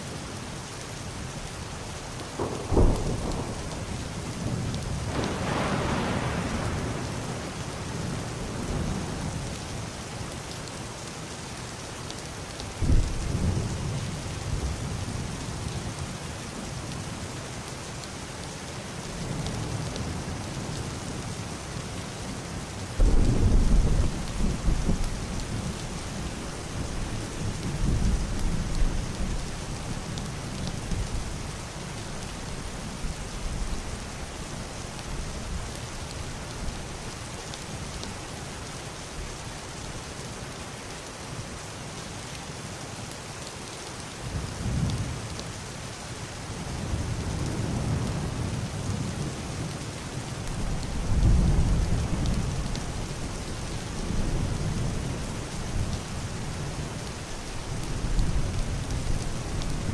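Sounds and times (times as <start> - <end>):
heavy rain on roof and window: 0.0 - 59.9
distant thunder rumbling: 2.4 - 4.4, 5.0 - 7.8, 23.0 - 28.8.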